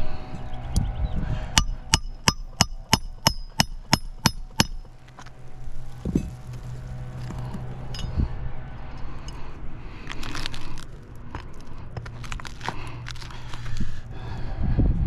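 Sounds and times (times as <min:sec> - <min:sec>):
hammer striking nail: 0:01.6 - 0:04.9.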